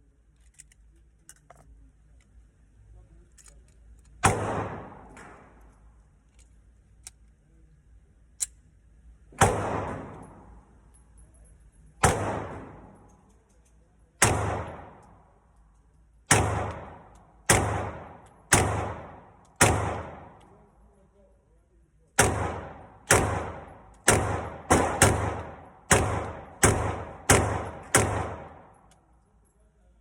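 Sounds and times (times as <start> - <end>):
pistol shots: 4.2 - 5.7, 9.3 - 10.6, 12.0 - 13.2, 14.2 - 15.3, 16.2 - 20.6, 22.2 - 28.9.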